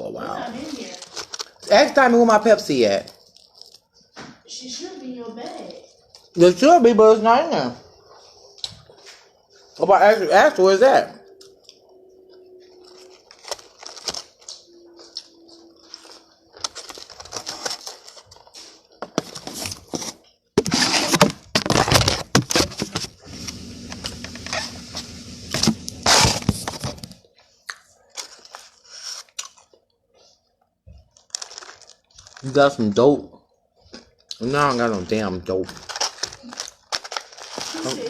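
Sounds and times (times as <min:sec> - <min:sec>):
packaging rustling and crinkling: 0:00.4 - 0:04.1, 0:11.2 - 0:33.1, 0:33.8 - 0:38.0.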